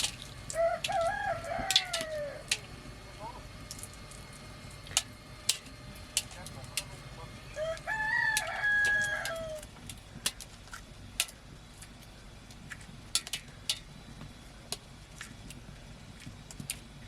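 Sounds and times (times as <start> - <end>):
rooster crowing: 0.5 - 2.6, 7.5 - 9.7.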